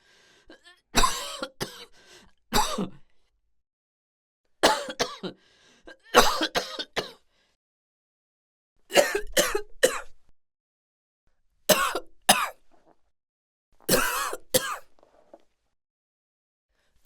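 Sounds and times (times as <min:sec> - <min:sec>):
person coughing: 0:01.0 - 0:01.9, 0:02.6 - 0:03.0, 0:04.6 - 0:07.2, 0:08.9 - 0:10.1, 0:13.9 - 0:14.9.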